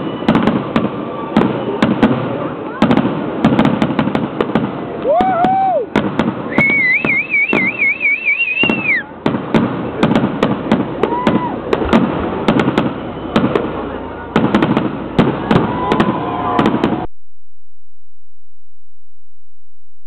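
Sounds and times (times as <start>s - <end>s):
firework bangs: 0.0s - 17.1s
firework crackling: 0.0s - 17.1s
whistling firework: 0.0s - 17.1s.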